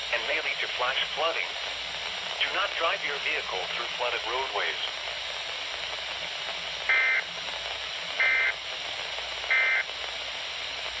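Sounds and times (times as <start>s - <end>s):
radio static hiss: 0.0s - 11.0s
buzzing two-tone data bursts: 6.9s - 7.2s, 8.2s - 8.6s, 9.5s - 9.8s.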